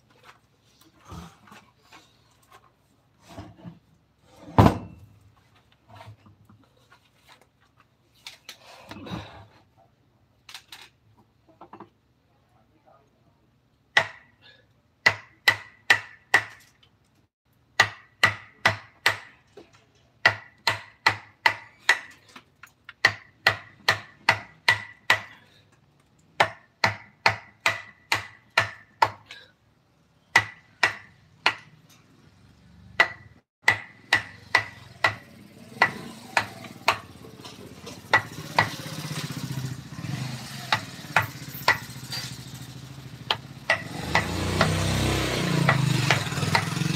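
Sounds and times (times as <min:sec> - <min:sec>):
mallet striking chisel into wood: 0:14.0 - 0:14.3, 0:15.0 - 0:16.6, 0:17.8 - 0:19.4, 0:20.2 - 0:22.1, 0:23.0 - 0:25.4, 0:26.4 - 0:29.2, 0:30.3 - 0:31.7, 0:33.0 - 0:37.1, 0:43.3 - 0:44.8.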